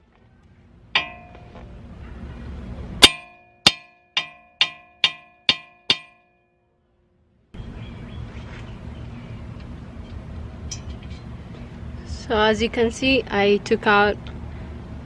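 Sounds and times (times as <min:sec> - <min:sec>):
hammer striking metal stud: 0:01.0 - 0:01.5, 0:03.0 - 0:06.4.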